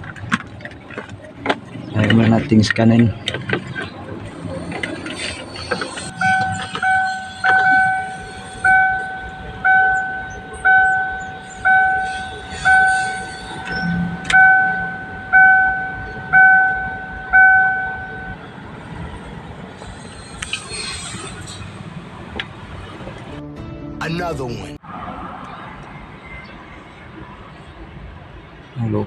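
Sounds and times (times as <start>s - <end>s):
electronic chime: 6.1s - 18.4s.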